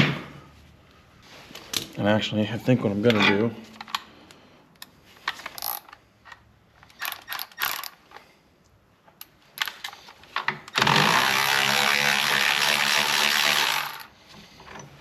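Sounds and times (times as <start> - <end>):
cordless power tool motor running: 10.8 - 14.1.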